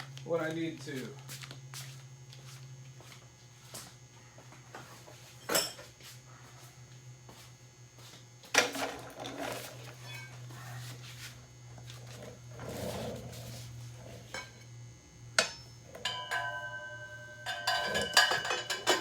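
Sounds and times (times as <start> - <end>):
steady low hum: 0.0 - 19.0
metal hand tools clanking: 15.4 - 19.0.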